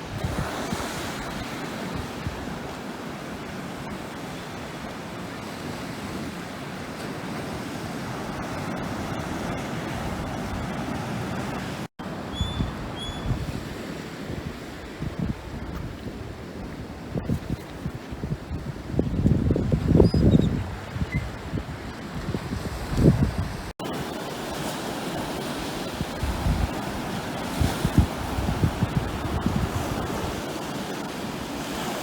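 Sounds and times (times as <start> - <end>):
wind buffeting microphone: 0.0 - 2.7, 12.3 - 23.7, 25.4 - 31.2
ocean surf washing onto beach: 0.0 - 20.0, 20.7 - 32.0.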